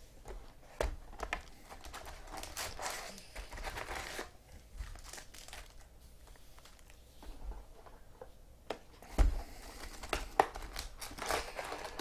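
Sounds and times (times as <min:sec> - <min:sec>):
card packs rustling and clicking: 0:00.3 - 0:07.0, 0:09.1 - 0:12.0.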